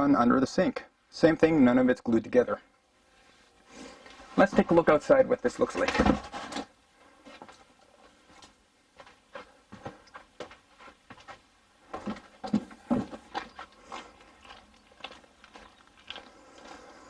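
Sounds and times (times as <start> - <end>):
footsteps: 5.8 - 17.0.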